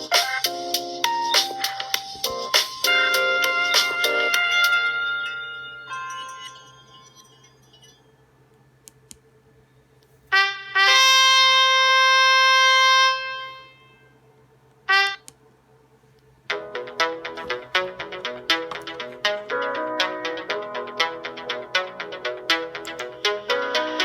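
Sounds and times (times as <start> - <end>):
phone ringtone notes: 1.1 - 8.2.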